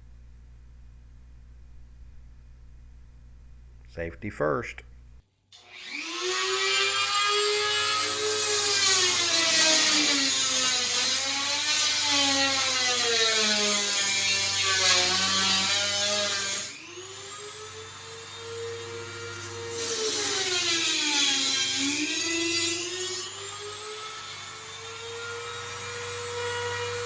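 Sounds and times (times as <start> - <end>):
rotary tool cutting metal: 5.7 - 16.8, 19.3 - 24.0.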